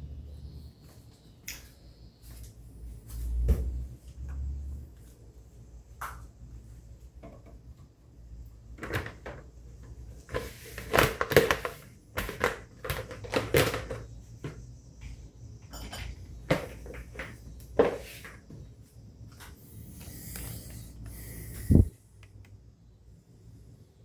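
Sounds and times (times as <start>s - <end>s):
dishes clattering: 15.7s - 16.8s.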